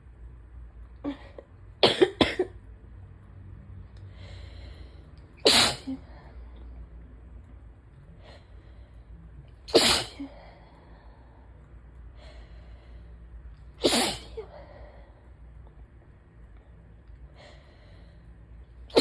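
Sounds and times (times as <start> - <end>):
person sneezing: 5.4 - 6.0, 9.7 - 10.3, 13.8 - 14.5.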